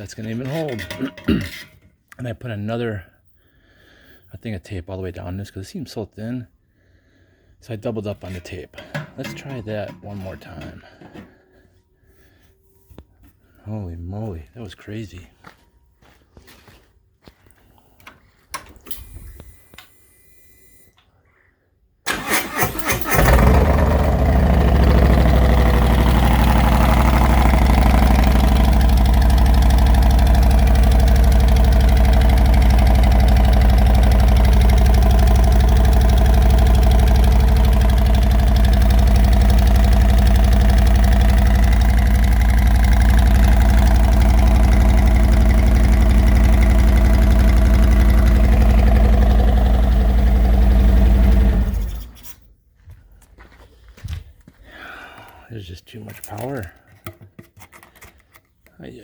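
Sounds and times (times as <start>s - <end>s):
motorcycle starter cranking: 22.1s - 52.4s
motorcycle engine idling: 23.1s - 52.1s.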